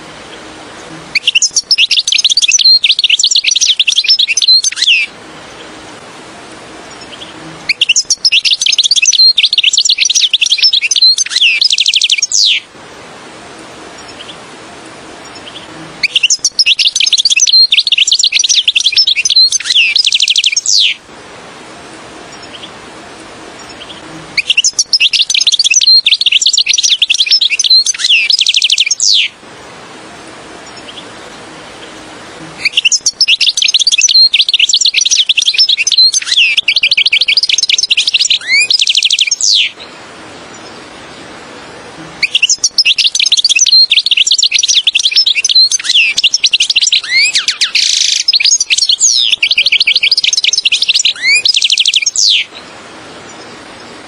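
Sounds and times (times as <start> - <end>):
faint hiss: 0.0 - 54.0
goldfinch twittering and trilling: 1.1 - 5.7, 6.8 - 12.7, 15.2 - 21.0, 22.3 - 22.7, 23.6 - 29.4, 32.6 - 39.9, 42.2 - 52.7.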